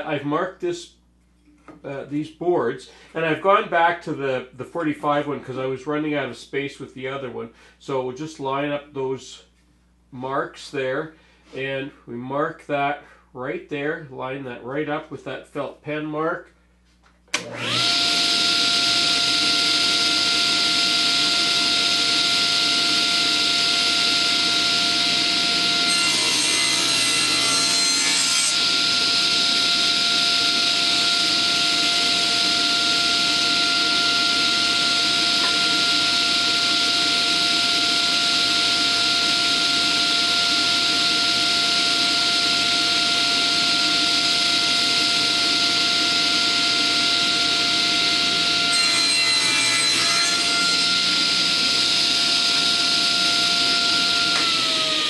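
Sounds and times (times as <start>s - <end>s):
table saw cutting wood: 17.4s - 55.0s.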